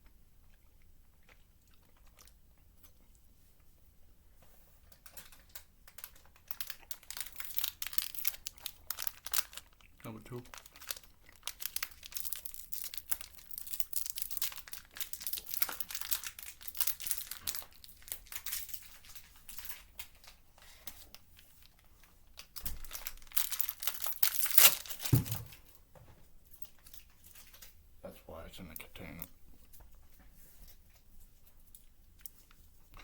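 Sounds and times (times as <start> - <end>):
plastic packaging crinkling: 4.9 - 25.8, 26.5 - 27.8.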